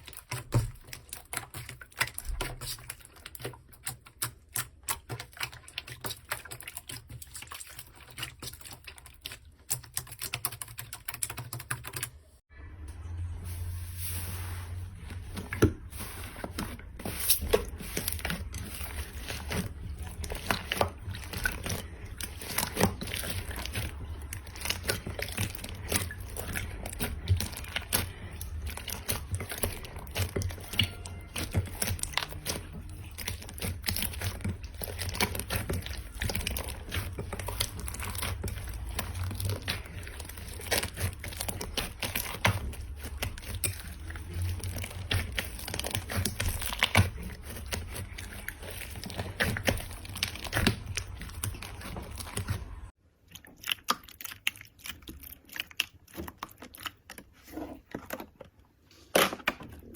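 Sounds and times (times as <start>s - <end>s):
slime squeezed crackling: 15.0s - 58.1s.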